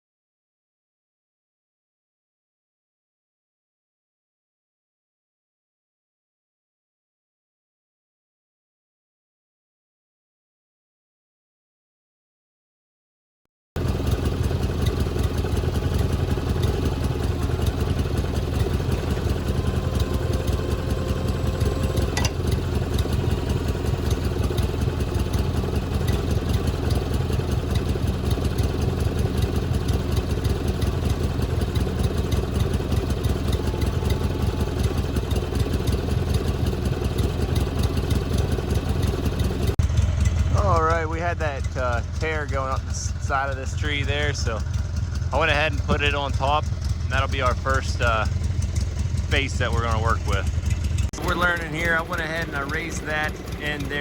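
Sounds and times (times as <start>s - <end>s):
sawmill engine running: 13.8s - 54.0s.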